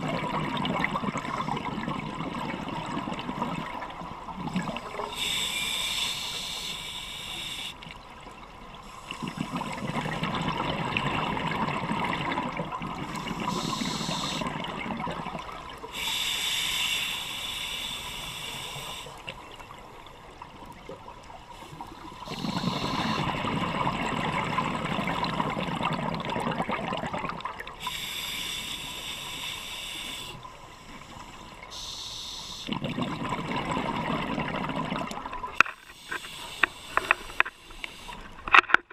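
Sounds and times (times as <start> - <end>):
exhaled bubbles rumbling: 0.0 - 5.1, 9.2 - 15.8, 21.8 - 27.7, 32.7 - 35.6
regulator hissing inhale: 5.0 - 7.8, 13.0 - 14.6, 15.8 - 19.4, 21.6 - 23.4, 27.8 - 32.7, 35.8 - 38.4.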